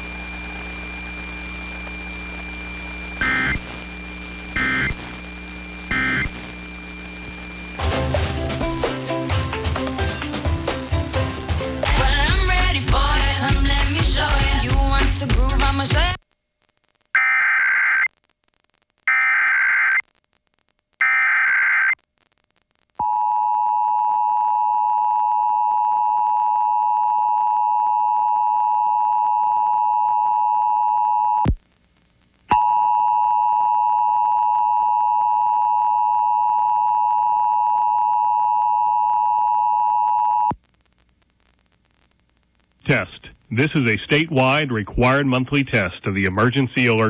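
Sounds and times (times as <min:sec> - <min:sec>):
digital data bursts: 0:03.2 - 0:03.7, 0:04.6 - 0:05.0, 0:05.9 - 0:06.4.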